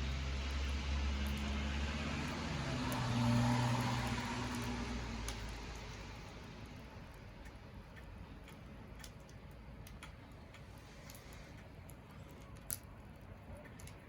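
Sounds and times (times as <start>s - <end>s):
wood fire crackling and popping: 0.0s - 7.5s
low rumbling background noise: 0.0s - 14.0s.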